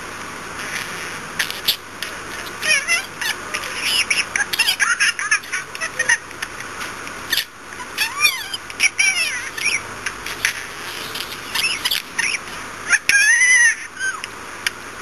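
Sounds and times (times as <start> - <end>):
budgerigar chattering: 0.6 - 1.8, 2.4 - 6.2, 7.3 - 13.0.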